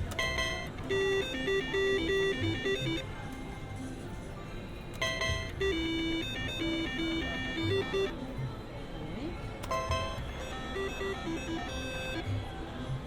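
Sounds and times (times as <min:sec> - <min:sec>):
slot machine jingle: 0:00.0 - 0:03.1, 0:05.0 - 0:08.2, 0:09.6 - 0:12.4.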